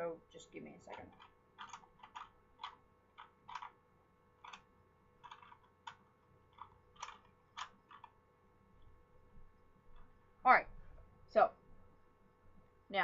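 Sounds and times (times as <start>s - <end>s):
plastic puzzle cube clicking: 0.9s - 3.8s, 4.4s - 8.2s.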